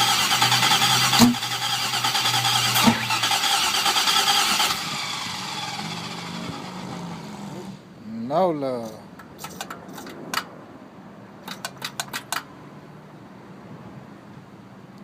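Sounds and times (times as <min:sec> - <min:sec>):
engine starter cranking: 0:00.0 - 0:06.9.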